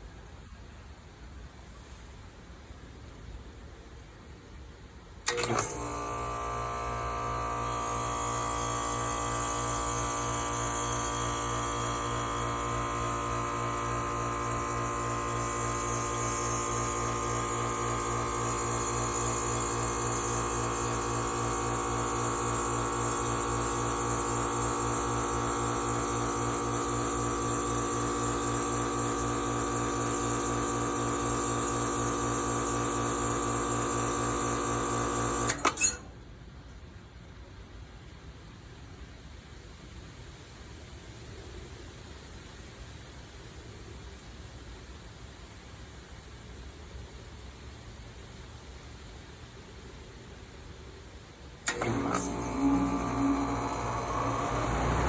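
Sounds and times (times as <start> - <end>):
air conditioner unit humming: 4.8 - 36.4.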